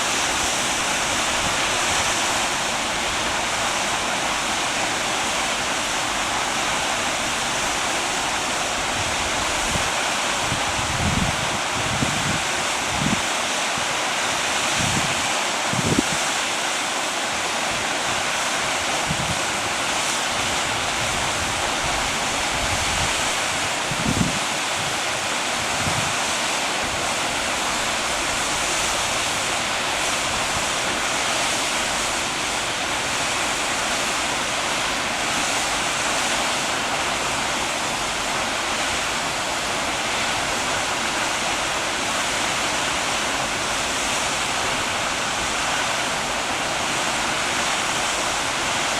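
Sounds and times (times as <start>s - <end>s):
wind thumps on microphone: 10.5s - 13.2s.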